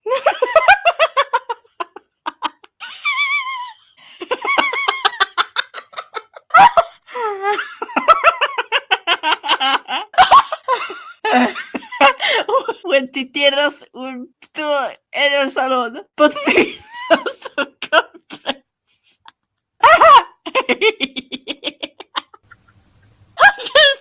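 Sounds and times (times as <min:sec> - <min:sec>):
high-pitched giggling: 0:16.5 - 0:24.0.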